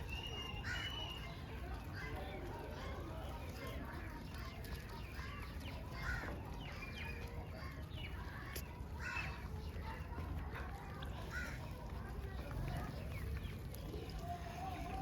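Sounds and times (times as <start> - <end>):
short bird calls: 0.1 - 1.4.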